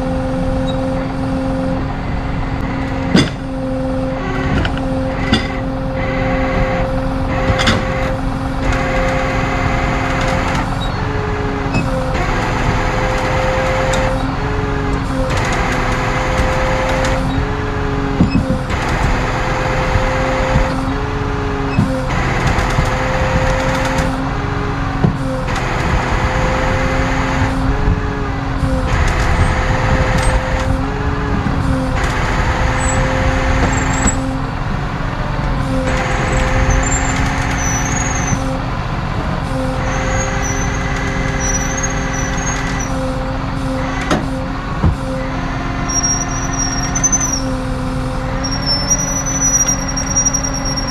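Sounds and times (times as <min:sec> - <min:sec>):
truck engine running: 0:00.0 - 0:50.9
faint high squeal: 0:45.9 - 0:47.4, 0:48.4 - 0:50.9.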